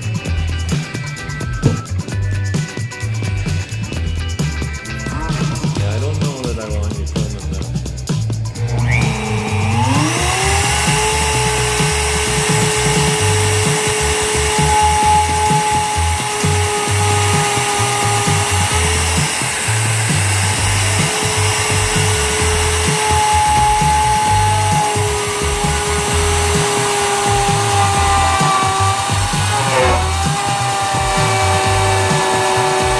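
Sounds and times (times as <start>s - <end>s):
power tool motor whining: 8.6s - 32.9s.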